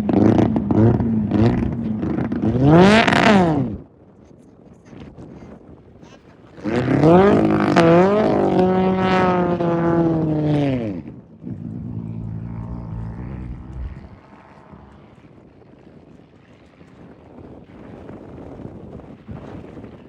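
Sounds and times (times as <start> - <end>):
faint engine droning: 0.0 - 17.4
race vehicle engine passing by: 6.6 - 15.4.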